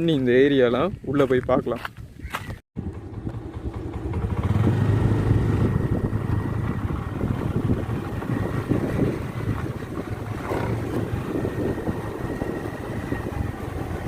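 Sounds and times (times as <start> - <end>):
vehicle engine running: 2.8 - 14.0.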